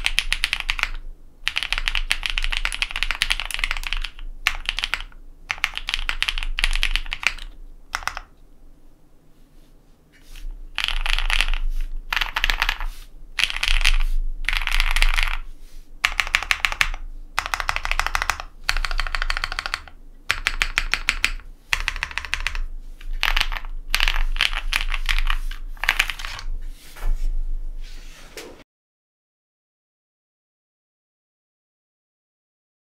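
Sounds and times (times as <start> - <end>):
mechanical keyboard typing: 0.0 - 8.3, 10.7 - 15.4, 16.0 - 26.5.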